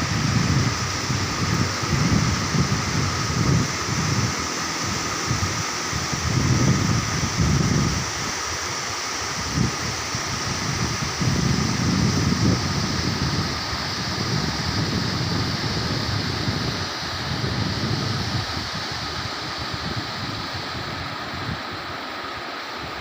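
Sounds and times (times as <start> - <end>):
wind buffeting microphone: 0.0 - 8.3, 9.4 - 22.0
river water rushing: 0.0 - 23.0.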